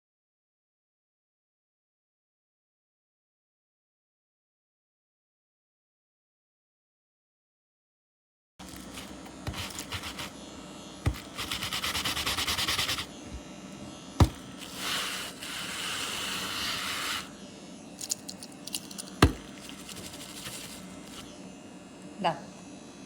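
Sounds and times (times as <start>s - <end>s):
objects scraping and rubbing: 8.6s - 10.4s, 11.0s - 17.3s, 18.0s - 21.3s
fast rhythmic rasp: 11.2s - 13.1s.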